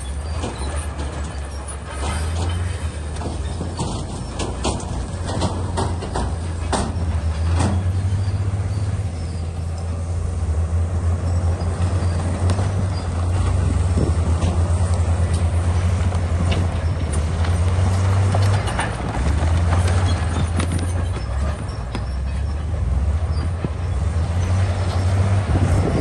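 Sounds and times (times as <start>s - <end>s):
bulldozer engine running: 0.0s - 26.0s
sharp knocks and clanks: 0.2s - 8.4s, 12.4s - 22.6s.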